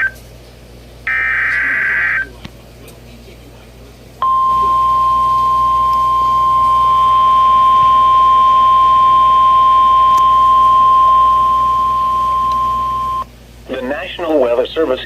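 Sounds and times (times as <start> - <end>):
steady warning alarm tone: 1.1 - 2.4, 4.2 - 13.3.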